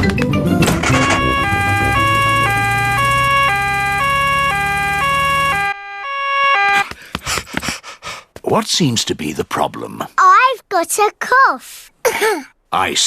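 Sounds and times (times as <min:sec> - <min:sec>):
low steady engine drone: 0:00.5 - 0:05.9
cartoon two-tone emergency siren: 0:00.6 - 0:06.9.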